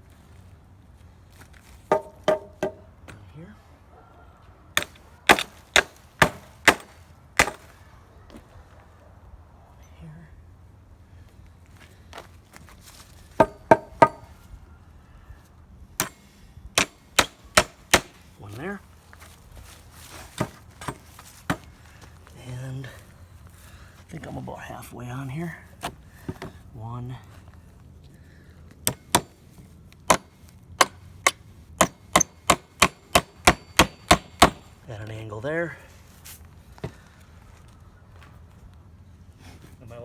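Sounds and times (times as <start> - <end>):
hammer striking nail into wood: 1.9 - 2.8, 4.8 - 7.7, 13.4 - 14.3, 16.0 - 16.2, 16.8 - 18.2, 28.8 - 29.4, 30.1 - 34.7.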